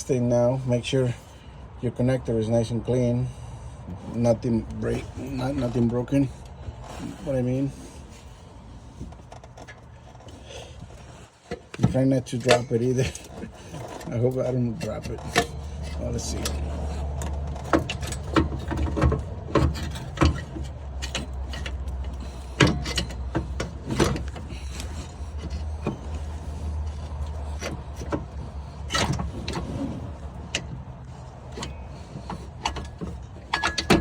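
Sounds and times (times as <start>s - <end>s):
metal clunking and scraping: 3.3s - 34.0s
sharp metal knocks: 32.6s - 34.0s.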